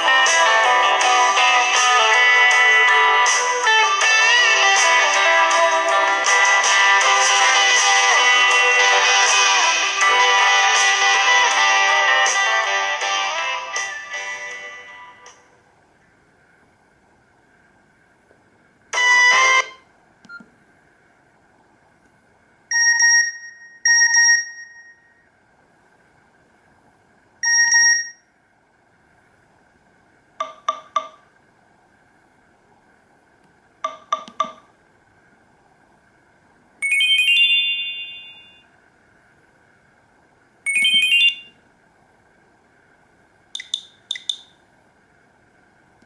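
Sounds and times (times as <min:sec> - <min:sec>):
electronic ringtone chimes: 0:36.8 - 0:38.6, 0:40.7 - 0:41.5.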